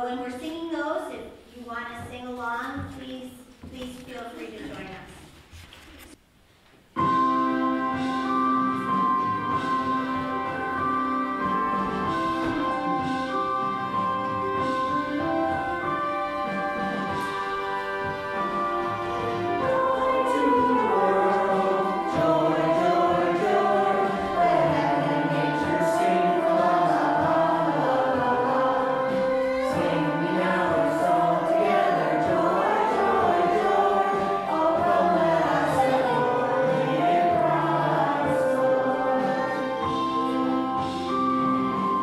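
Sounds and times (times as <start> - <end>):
choir singing a slow hymn: 18.4 - 41.8.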